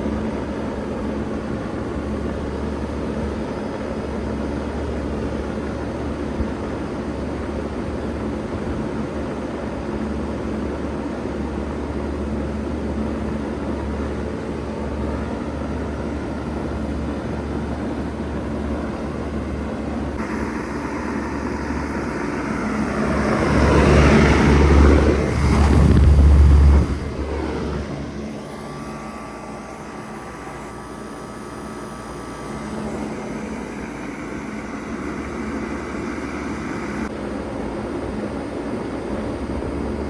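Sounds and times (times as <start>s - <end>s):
heat pump humming: 0.0s - 40.0s
rush of air: 20.2s - 28.6s.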